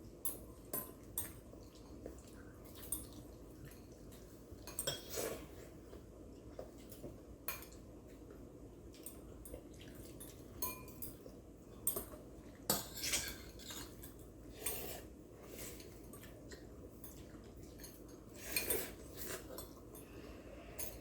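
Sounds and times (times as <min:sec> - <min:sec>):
utensils clinking on plates: 0:04.7 - 0:05.5, 0:09.0 - 0:15.0, 0:17.0 - 0:21.0.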